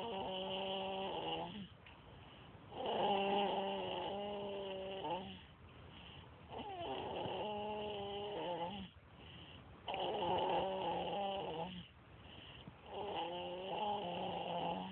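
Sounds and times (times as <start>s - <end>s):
person snoring: 0.0s - 1.7s, 2.7s - 5.5s, 6.5s - 8.9s, 9.9s - 11.9s, 12.9s - 14.9s.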